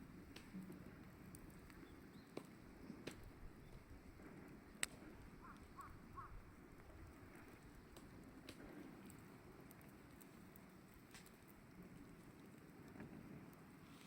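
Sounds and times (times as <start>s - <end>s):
wood fire crackling: 0.0s - 14.0s
bird calling: 5.4s - 6.4s.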